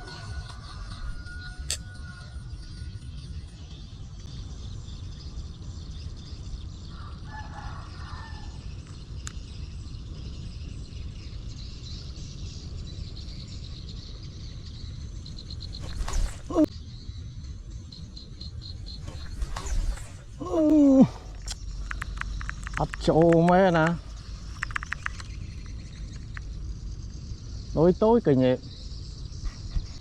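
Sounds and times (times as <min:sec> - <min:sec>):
faint high chirping: 0:00.0 - 0:30.0
wind rumble on microphone: 0:28.7 - 0:30.0.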